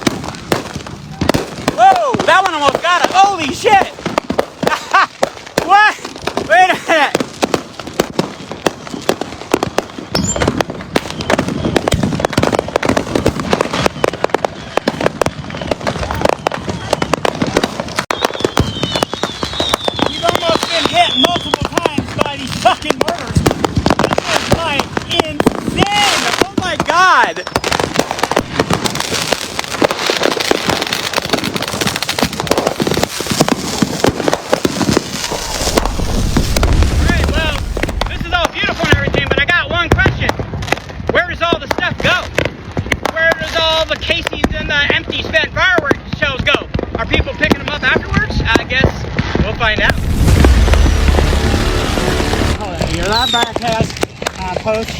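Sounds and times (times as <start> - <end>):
fireworks bangs and crackles: 0.0 - 54.9
fireworks rumble: 0.0 - 54.9
firework whistle: 10.1 - 12.4, 13.6 - 21.8, 34.6 - 38.4, 49.8 - 54.3.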